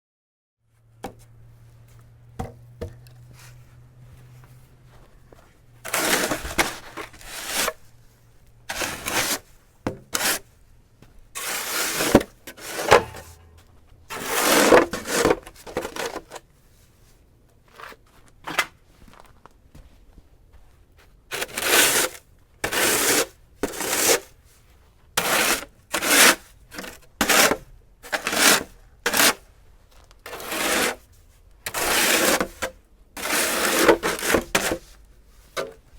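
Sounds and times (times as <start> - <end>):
snow shovel scraping pavement: 5.8 - 7.9, 8.7 - 9.5, 10.1 - 10.5, 11.4 - 16.4, 21.3 - 24.4, 25.2 - 29.4, 30.3 - 31.1, 31.7 - 35.8.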